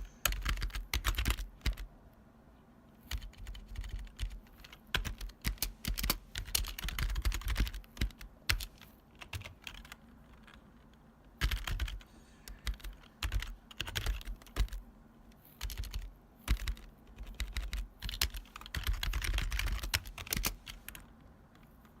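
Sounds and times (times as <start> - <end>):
keyboard keys clacking: 3.0 - 10.6, 11.4 - 14.8, 15.6 - 21.0.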